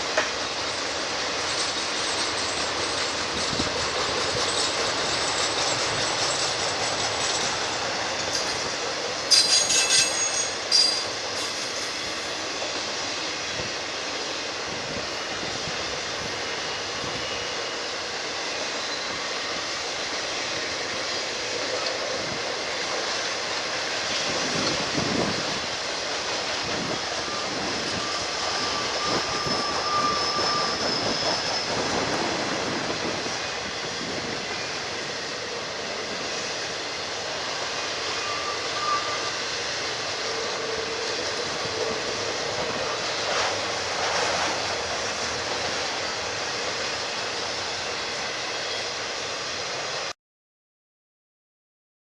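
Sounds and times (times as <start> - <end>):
train wheels rolling on rail: 0.0 - 50.1
high-pitched wheel squeals: 9.3 - 12.8, 26.8 - 35.2, 38.0 - 43.6.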